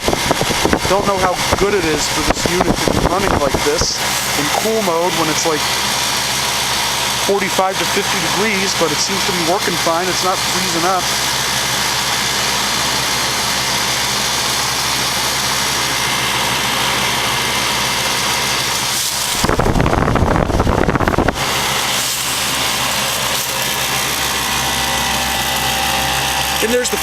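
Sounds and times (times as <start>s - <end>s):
heat pump humming: 0.0s - 27.0s
loud rumbling burst: 19.2s - 21.9s.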